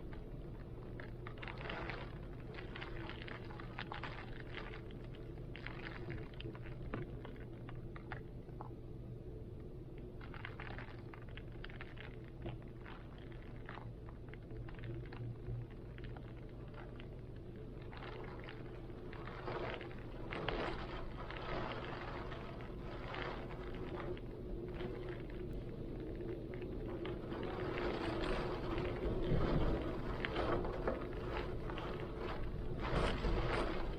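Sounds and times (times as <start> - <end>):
drips and spatters: 0.0 - 8.8, 10.1 - 33.9
heavy rain: 27.0 - 33.9.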